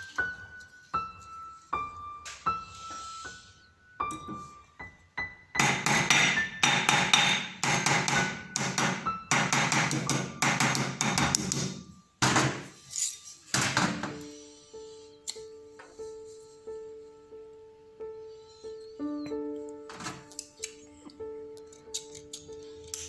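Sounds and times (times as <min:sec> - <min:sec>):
rapid hammering on metal: 0:05.6 - 0:12.6
background music: 0:13.8 - 0:23.0.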